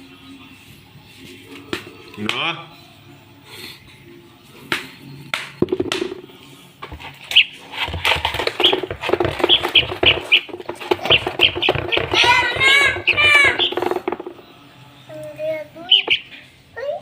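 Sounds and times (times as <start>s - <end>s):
baby bird cheeping: 8.4s - 14.3s, 15.8s - 16.5s.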